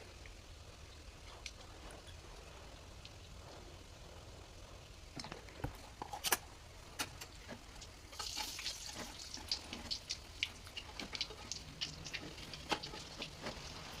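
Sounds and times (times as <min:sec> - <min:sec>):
fritters sizzling in hot oil: 0:00.0 - 0:14.0
oil crackling and popping: 0:00.0 - 0:14.0.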